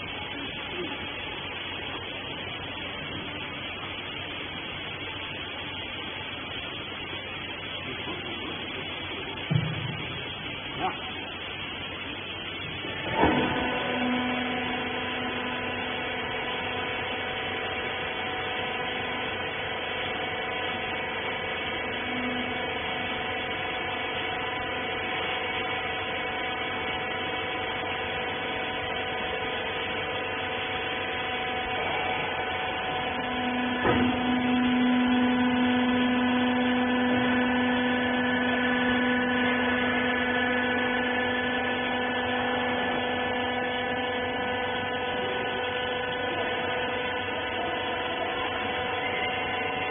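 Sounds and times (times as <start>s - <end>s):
hydraulic pump motor humming: 0.0s - 49.9s
knock: 9.5s - 9.9s.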